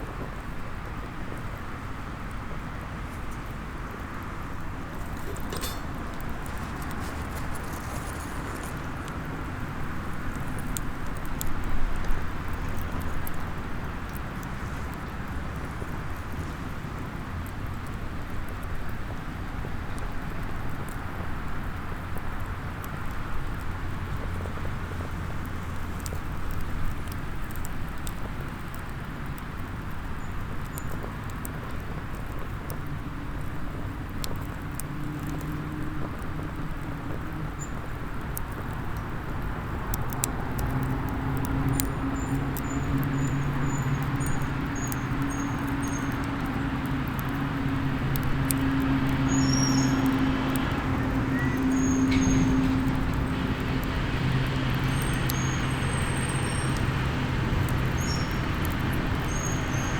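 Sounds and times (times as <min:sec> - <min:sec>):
wood fire crackling and popping: 0:00.0 - 0:59.9
low engine hum: 0:35.5 - 0:59.9.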